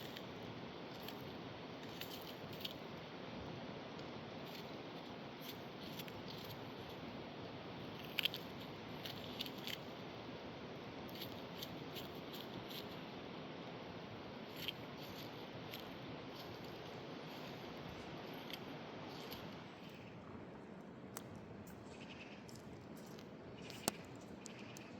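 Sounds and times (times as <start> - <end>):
small sharp clicks: 22.5 - 24.9.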